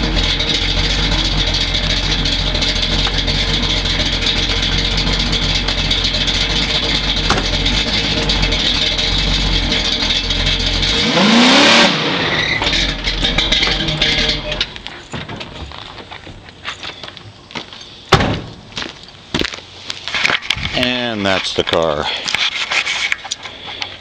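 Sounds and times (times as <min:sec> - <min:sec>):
car engine rumbling and revving: 0:00.0 - 0:16.6.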